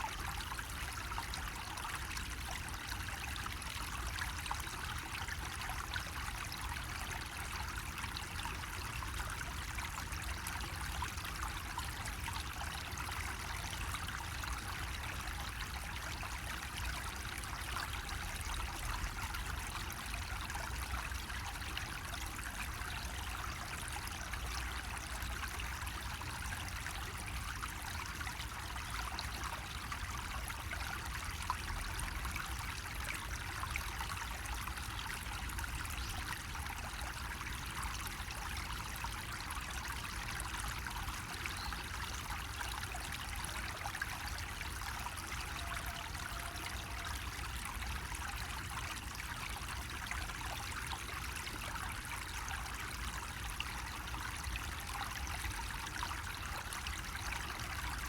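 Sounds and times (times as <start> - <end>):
water trickling from spout: 0.0 - 58.0.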